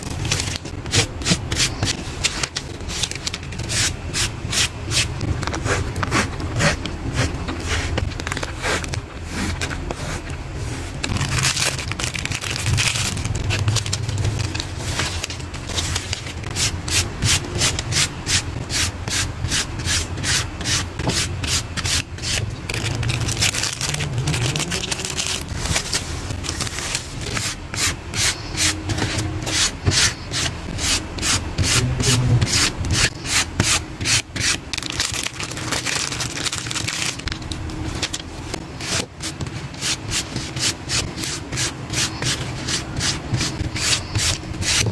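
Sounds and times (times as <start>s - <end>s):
rapid rubbing strokes: 23.5s - 34.6s, 39.7s - 44.9s.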